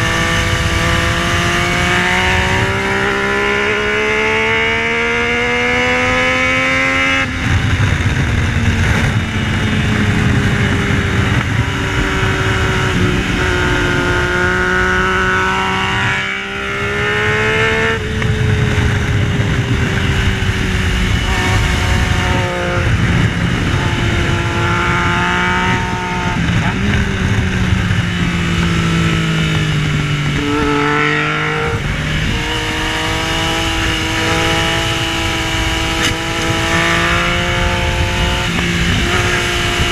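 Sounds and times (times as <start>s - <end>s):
heavy rushing noise: 0.0s - 39.9s
motorcycle engine revving: 0.0s - 39.9s.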